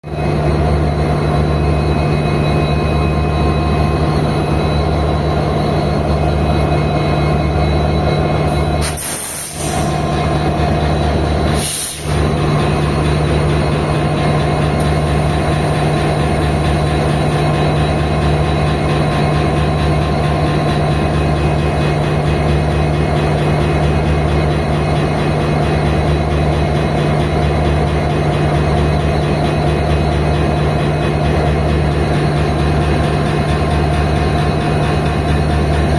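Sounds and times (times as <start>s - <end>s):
diesel locomotive engine humming: 0.1s - 35.9s
brief hiss: 8.8s - 10.0s, 11.5s - 12.1s.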